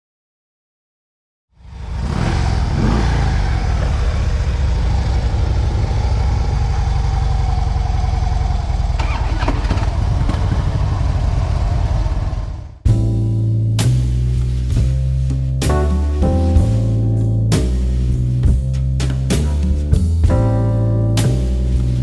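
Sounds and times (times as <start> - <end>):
motorcycle engine running: 1.7 - 8.8.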